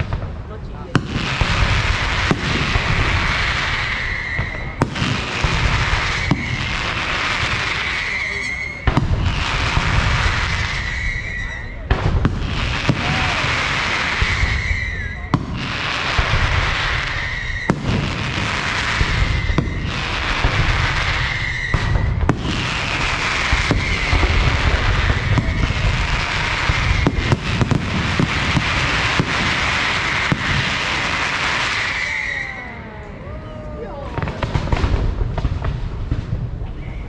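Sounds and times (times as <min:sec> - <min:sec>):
sharp firework bangs: 0:00.0 - 0:32.6, 0:34.1 - 0:37.0
firework crackling: 0:00.0 - 0:37.0
whistling firework shells: 0:02.2 - 0:11.9, 0:12.5 - 0:33.2
low booming: 0:11.8 - 0:31.8, 0:32.8 - 0:37.0.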